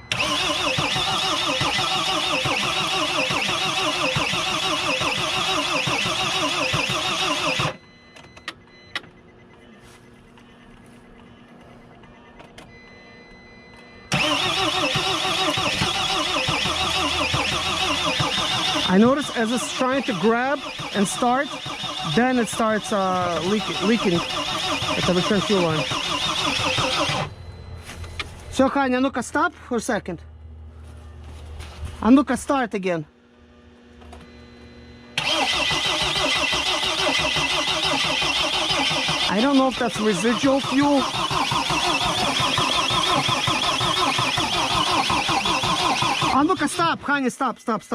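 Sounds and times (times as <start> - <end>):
diesel engine cranking on starter: 0.0 - 7.8, 14.1 - 27.4, 35.2 - 47.2.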